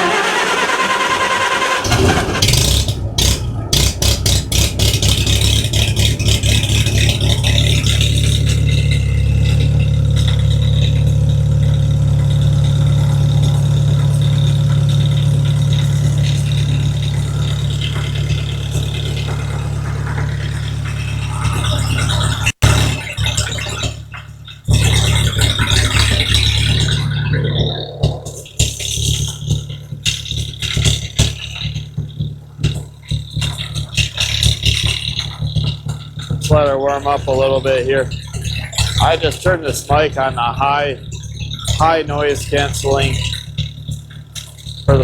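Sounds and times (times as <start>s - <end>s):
tractor engine cold-starting: 0.0s - 45.0s.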